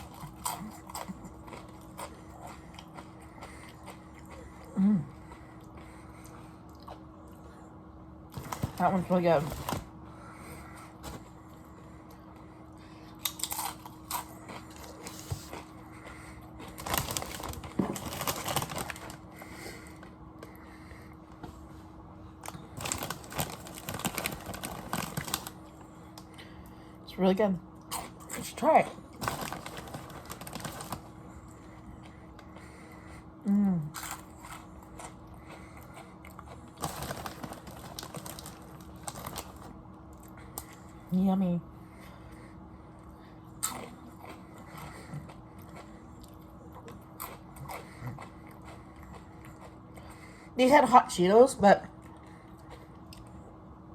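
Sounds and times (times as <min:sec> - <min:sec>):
chips being chewed: 0:00.0 - 0:07.5, 0:08.3 - 0:09.9, 0:10.6 - 0:20.6, 0:22.4 - 0:26.3, 0:29.0 - 0:33.2, 0:33.9 - 0:40.9, 0:43.6 - 0:50.2.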